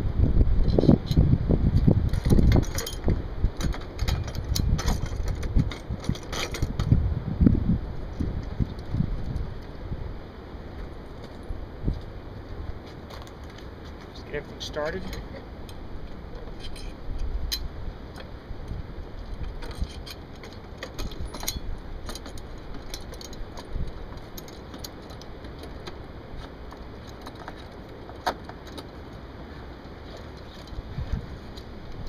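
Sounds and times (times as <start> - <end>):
wind rumble on microphone: 0.0 - 32.0
metal bolts clinking: 2.1 - 6.9, 16.4 - 17.7, 19.6 - 26.0.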